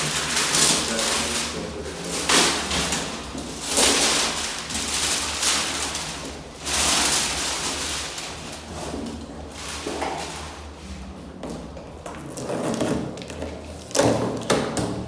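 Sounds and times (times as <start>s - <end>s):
packaging crackling and rustling: 0.0s - 10.8s.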